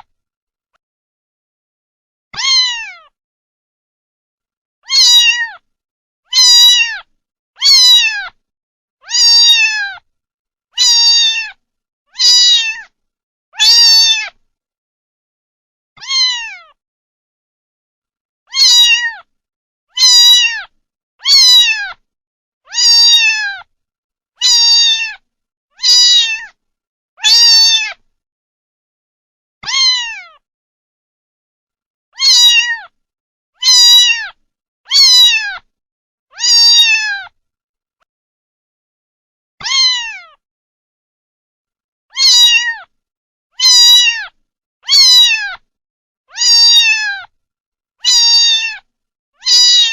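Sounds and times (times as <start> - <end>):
kitten meowing: 2.4 - 3.1, 4.8 - 5.6, 6.3 - 8.4, 9.0 - 10.0, 10.8 - 12.9, 13.6 - 14.4, 16.0 - 16.8, 18.5 - 19.3, 20.0 - 22.0, 22.7 - 23.7, 24.4 - 25.2, 25.8 - 26.6, 27.2 - 28.0, 29.6 - 30.4, 32.2 - 33.0, 33.6 - 35.7, 36.3 - 37.4, 39.6 - 40.4, 42.1 - 42.9, 43.6 - 45.6, 46.3 - 47.3, 48.0 - 49.9.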